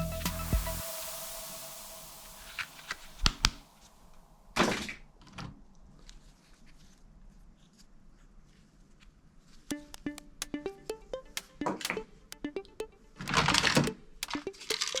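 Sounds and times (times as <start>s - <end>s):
music: 0.0s - 2.2s, 9.7s - 15.0s
sharp clicks and knocks: 9.7s - 12.8s, 13.6s - 15.0s.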